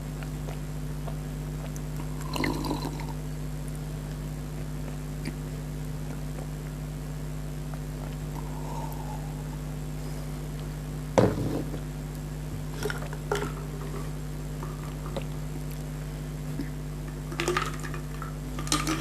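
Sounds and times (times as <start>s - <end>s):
low hum: 0.0s - 19.0s
mouth slurping: 0.2s - 3.2s, 7.8s - 10.7s.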